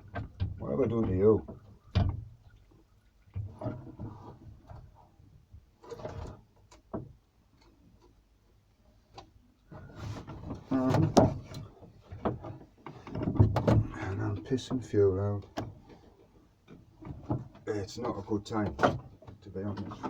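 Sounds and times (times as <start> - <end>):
knocks and clatters of handling: 9.2 - 20.0.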